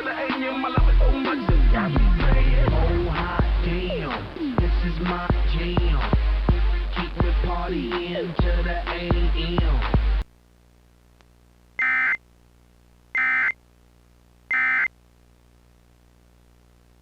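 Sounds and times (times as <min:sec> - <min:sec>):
hip-hop music: 0:00.0 - 0:10.2
buzzy digital data tones: 0:11.8 - 0:12.2, 0:13.1 - 0:13.6, 0:14.5 - 0:14.9.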